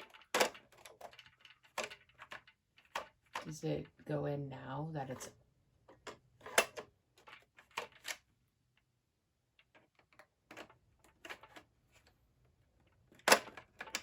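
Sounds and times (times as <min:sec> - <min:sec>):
plastic puzzle box clicks and knocks: 0:00.0 - 0:03.6, 0:05.2 - 0:08.9, 0:09.6 - 0:14.0.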